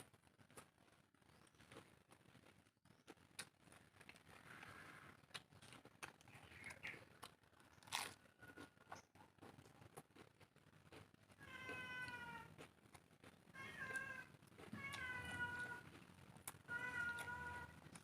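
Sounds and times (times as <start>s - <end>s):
cat meowing: 11.4s - 12.5s, 13.6s - 15.9s, 16.6s - 17.9s.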